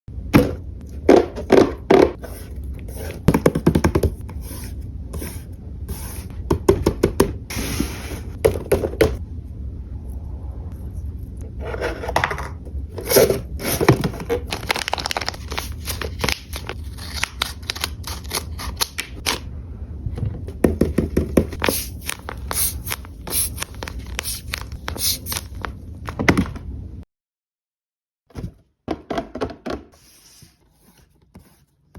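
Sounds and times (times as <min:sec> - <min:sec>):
paper scraping and crinkling: 0:13.0 - 0:19.0, 0:21.6 - 0:25.8.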